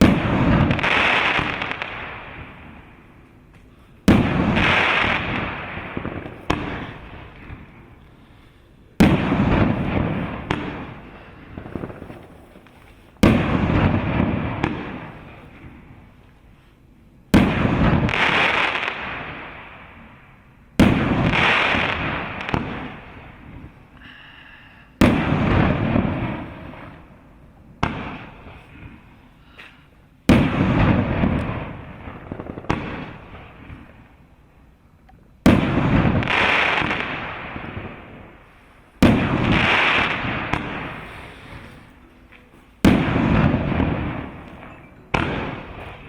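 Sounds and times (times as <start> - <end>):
firework rumble and crackle: 0.0 - 46.0
firework shells bursting: 9.0 - 15.6.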